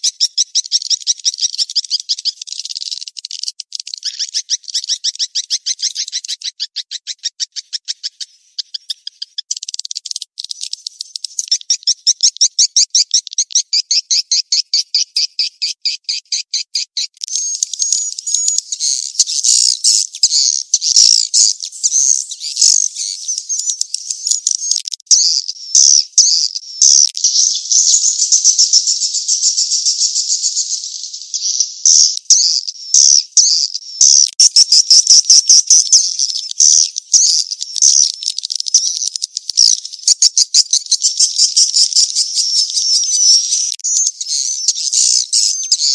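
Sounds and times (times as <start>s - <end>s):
dense bird twittering: 0.0s - 45.9s
high bird chirps: 0.0s - 45.9s.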